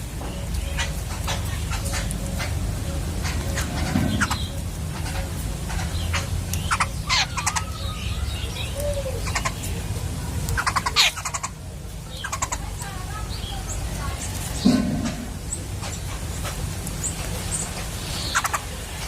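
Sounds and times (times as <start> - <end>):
birds chirping: 0.0 - 19.0
steady low rumble: 13.7 - 17.3.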